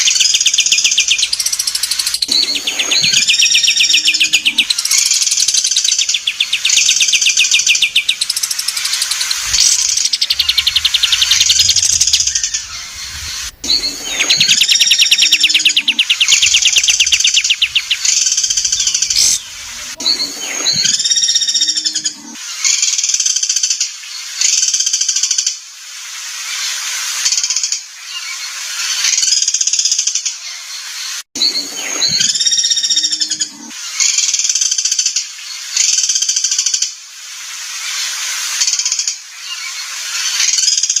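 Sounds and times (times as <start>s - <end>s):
songbird singing trills: 0.0s - 21.7s.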